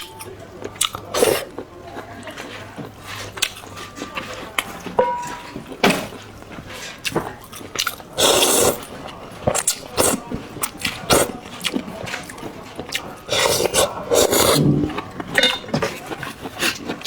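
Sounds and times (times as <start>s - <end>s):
chewing: 0.0s - 17.0s
noodle slurping: 8.2s - 8.9s, 13.3s - 14.9s.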